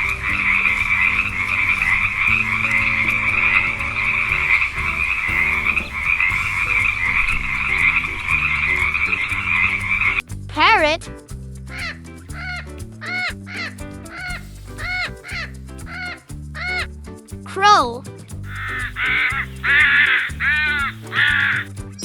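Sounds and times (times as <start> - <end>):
backing track with bass line: 0.0 - 22.0
frogs croaking: 18.5 - 21.7.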